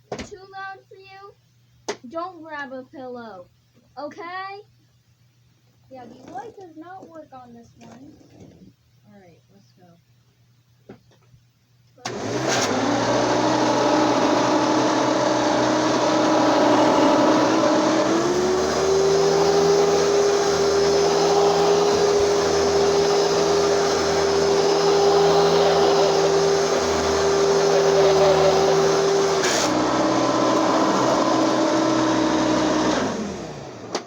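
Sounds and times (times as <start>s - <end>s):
vacuum cleaner motor whine: 12.0s - 34.0s.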